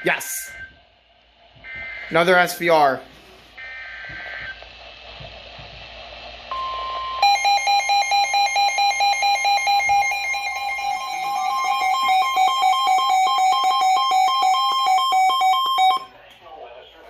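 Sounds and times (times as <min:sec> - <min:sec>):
rapid pulsed alarm beeping: 0:03.6 - 0:04.6, 0:06.5 - 0:16.1.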